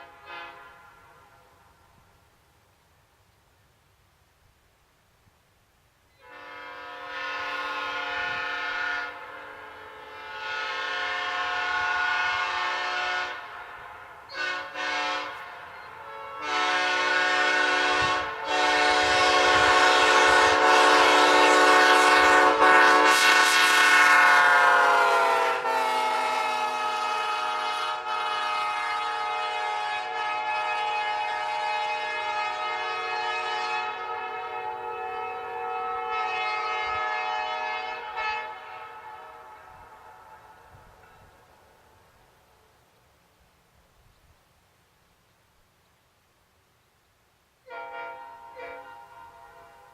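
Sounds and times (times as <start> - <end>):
locomotive air horn blasts: 0.0 - 1.9, 6.2 - 41.2, 47.6 - 49.9.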